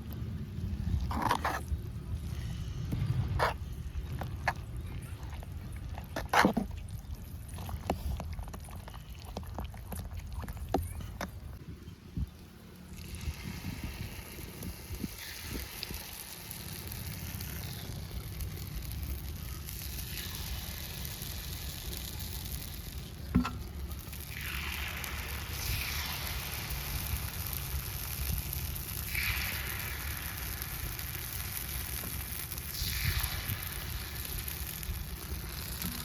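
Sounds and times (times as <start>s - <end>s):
batter sizzling in oil: 12.8s - 36.0s.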